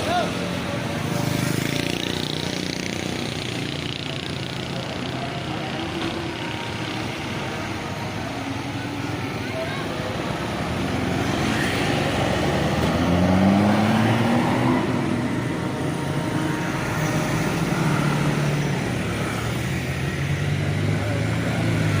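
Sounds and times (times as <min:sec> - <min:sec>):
vehicle engines passing: 0:00.0 - 0:22.0
engine speeding up: 0:10.1 - 0:22.0.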